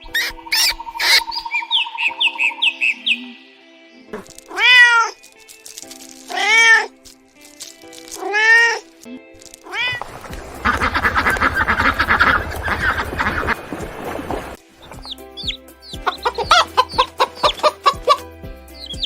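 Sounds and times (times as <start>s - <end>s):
chirping sound effects: 0.0s - 5.5s, 10.5s - 13.6s, 14.8s - 19.0s
light background music: 0.0s - 19.0s
cat meowing: 4.2s - 5.2s, 6.3s - 7.0s, 8.2s - 8.9s, 9.7s - 10.0s.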